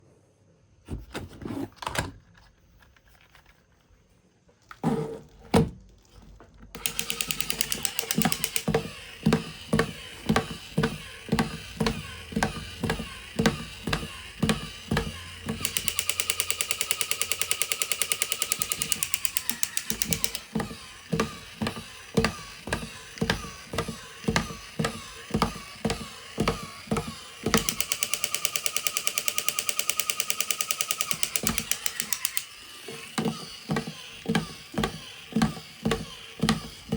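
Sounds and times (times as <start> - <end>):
toy vehicle motor and gears rattling: 2.4 - 36.9
clicks and thunks: 18.5 - 28.0.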